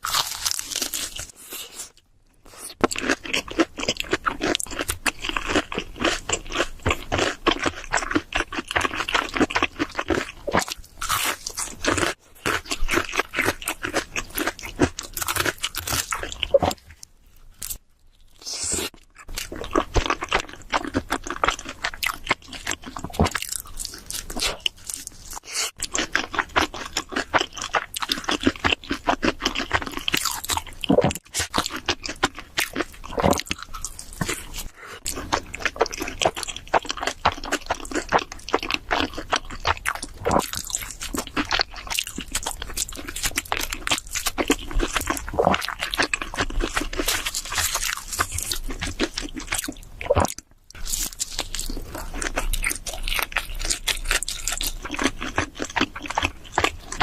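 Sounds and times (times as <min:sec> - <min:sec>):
crunching bites and wet chewing: 0:00.0 - 0:57.0.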